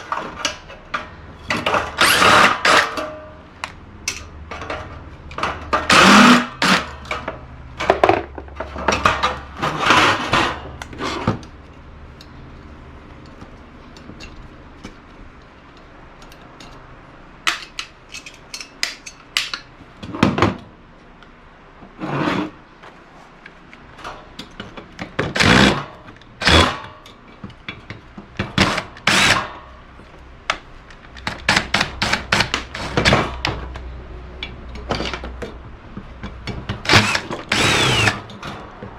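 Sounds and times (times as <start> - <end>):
power drill running: 2.0 - 2.9, 5.9 - 6.9, 25.4 - 25.8, 26.4 - 26.8, 29.0 - 29.5, 36.9 - 38.3.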